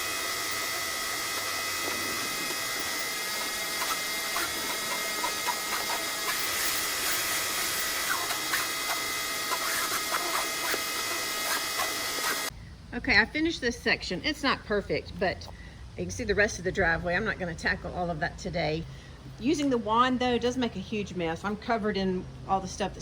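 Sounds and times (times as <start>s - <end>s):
pressure washer motor whine: 0.0s - 12.5s
water spray hissing: 0.0s - 12.5s.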